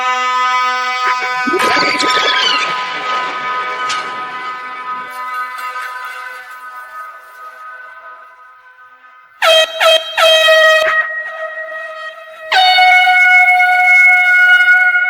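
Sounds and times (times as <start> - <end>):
air horn blasts: 9.4 - 15.0.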